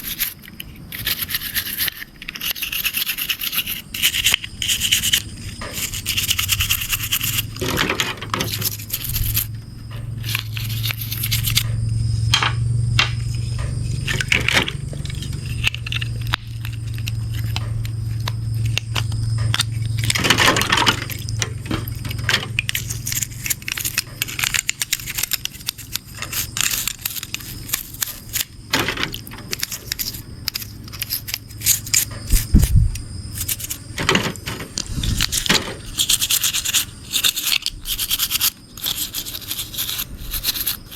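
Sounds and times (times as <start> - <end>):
hands scrubbing a muddy toy car: 0.0 - 9.5, 10.2 - 11.6, 34.4 - 40.9
low steady hum: 3.3 - 40.9.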